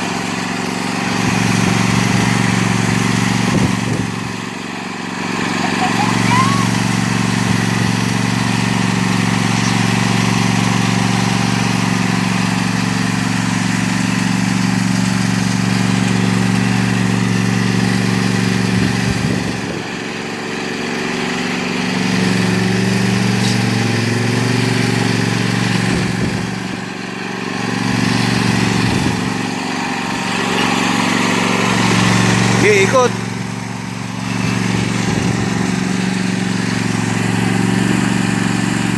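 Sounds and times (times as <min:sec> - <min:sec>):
lawn mower engine running: 0:00.0 - 0:38.9.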